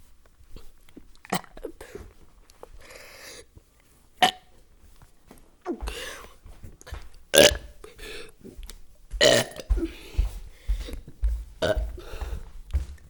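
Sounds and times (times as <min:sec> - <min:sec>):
person burping: 0:07.4 - 0:07.9, 0:09.2 - 0:09.7.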